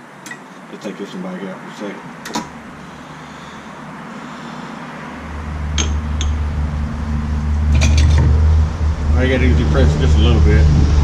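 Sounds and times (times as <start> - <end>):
low machine hum: 2.5 - 11.0.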